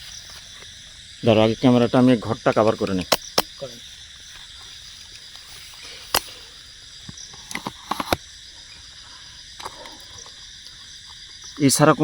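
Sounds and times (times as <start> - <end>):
crickets chirring: 0.0 - 12.0
camera handling clicks and knocks: 3.1 - 3.6.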